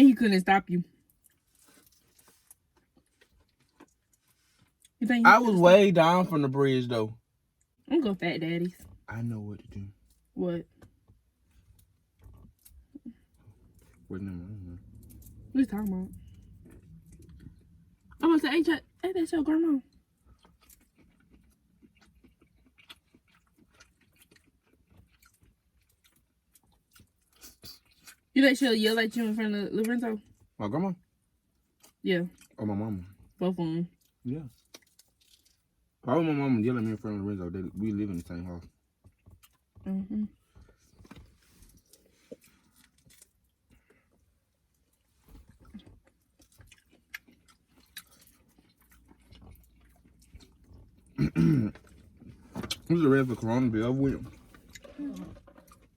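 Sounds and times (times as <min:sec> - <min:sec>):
chewing and biting food: 0:01.0 - 0:05.0, 0:16.1 - 0:18.2, 0:19.9 - 0:28.3, 0:31.4 - 0:36.0, 0:38.0 - 0:51.2, 0:54.2 - 0:55.9.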